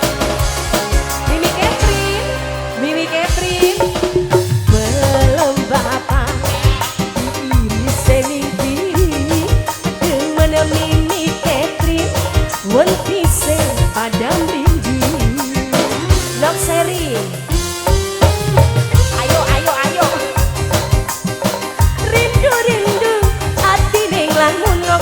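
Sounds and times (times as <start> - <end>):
drum beat: 0.0 - 2.6, 3.2 - 25.0
wavering melody line: 3.4 - 24.0.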